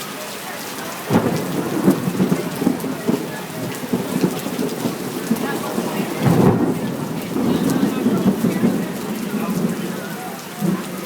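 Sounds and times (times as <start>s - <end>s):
heavy rain pattering: 0.0s - 11.0s.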